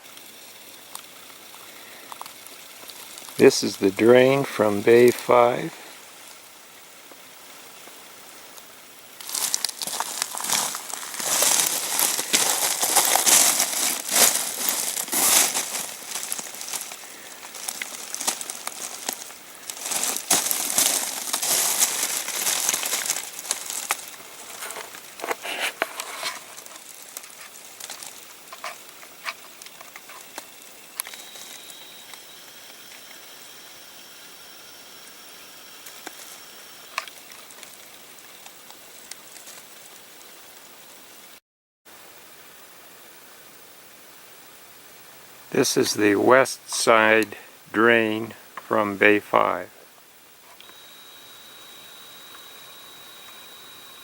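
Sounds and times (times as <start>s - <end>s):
water drips: 0.0s - 3.4s, 5.8s - 25.3s
water running into storm drain: 0.0s - 32.0s, 34.2s - 41.0s.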